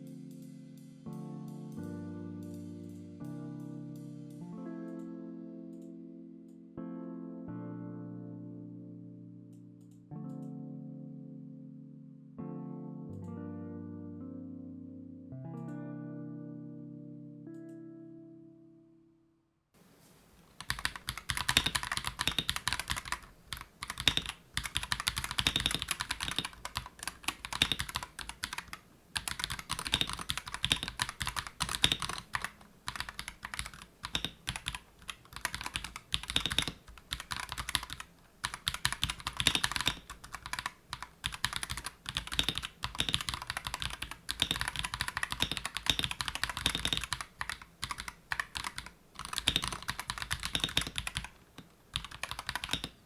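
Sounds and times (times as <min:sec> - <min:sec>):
mechanical keyboard key clacks: 0:20.6 - 0:53.0.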